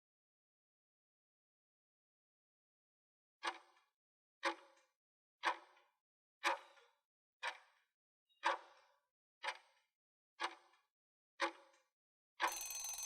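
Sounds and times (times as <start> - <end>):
clock ticks: 10.4 - 10.6, 12.4 - 13.0.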